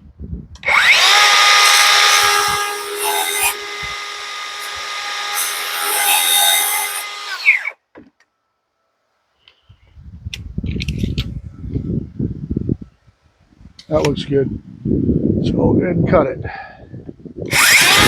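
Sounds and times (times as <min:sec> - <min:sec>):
power tool motor whining: 0:00.6 - 0:07.8, 0:17.5 - 0:18.0.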